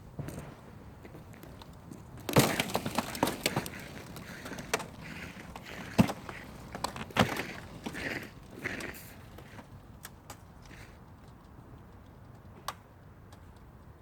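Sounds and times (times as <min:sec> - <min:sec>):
ice cracking and splintering: 0:02.3 - 0:08.3.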